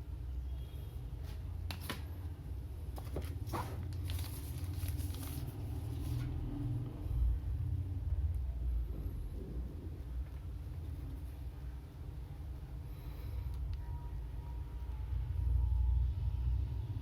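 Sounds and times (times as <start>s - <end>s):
steady low hum: 0.0s - 17.0s
objects being handled: 2.9s - 6.3s.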